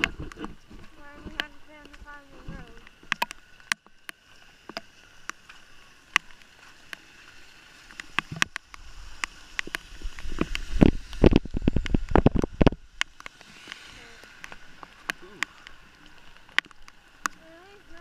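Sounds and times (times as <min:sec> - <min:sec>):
rain dripping and tapping: 0:00.0 - 0:18.0
water splashing: 0:00.0 - 0:18.0.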